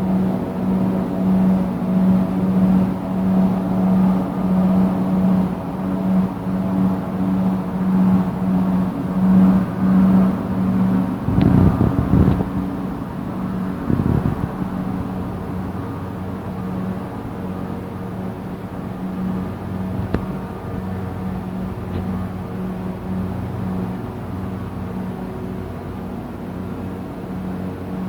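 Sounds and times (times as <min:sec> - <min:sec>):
short rumble with clicks: 0:11.2 - 0:12.9, 0:19.4 - 0:22.6.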